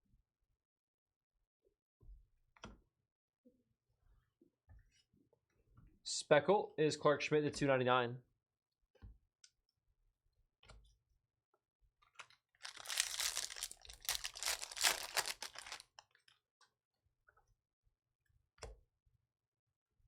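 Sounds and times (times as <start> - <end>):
wrapper being torn and crinkled: 12.6 - 15.9.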